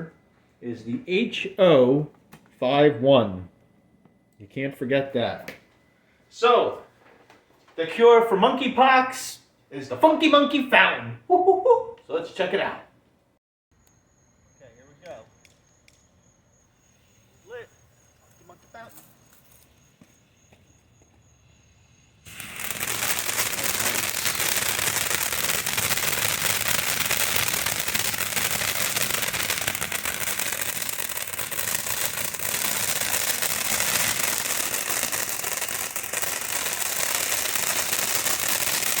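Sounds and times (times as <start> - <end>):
fountain firework hissing and crackling: 22.2 - 39.0.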